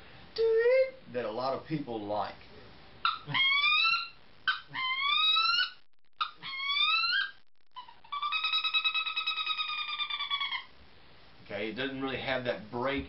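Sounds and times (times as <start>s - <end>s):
duck call squealing whistles: 3.0s - 10.7s.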